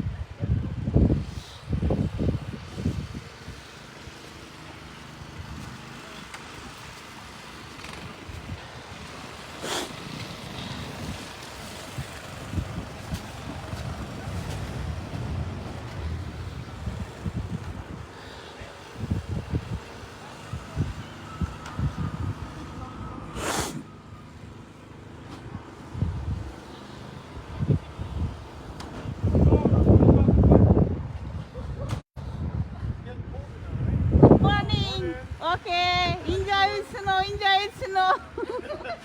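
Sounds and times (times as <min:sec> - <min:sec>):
wind noise on microphone: 0:00.0 - 0:03.7, 0:07.8 - 0:23.9, 0:25.4 - 0:37.9
vehicle engine rumbling: 0:03.5 - 0:36.7.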